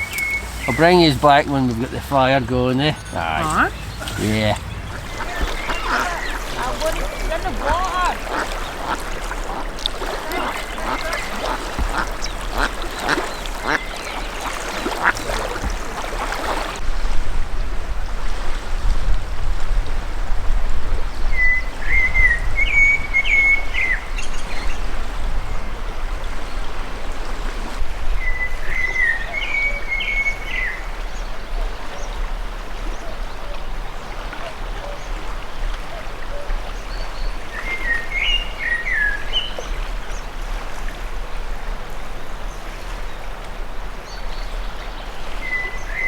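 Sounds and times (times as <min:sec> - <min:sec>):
steady low rush: 0:00.0 - 0:08.4
bird calls: 0:00.0 - 0:16.8, 0:32.8 - 0:40.3, 0:44.1 - 0:46.0
songbird singing: 0:00.0 - 0:16.8, 0:28.2 - 0:40.4, 0:44.1 - 0:46.0.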